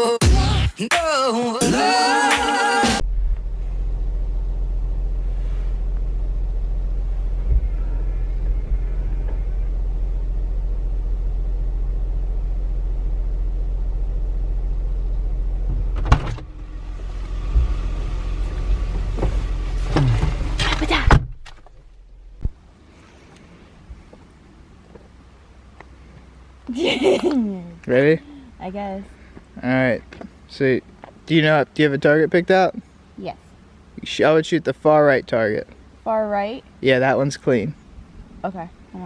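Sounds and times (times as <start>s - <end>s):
car engine rumble: 2.8s - 39.0s
creaking glides: 5.2s - 10.5s, 15.6s - 21.9s.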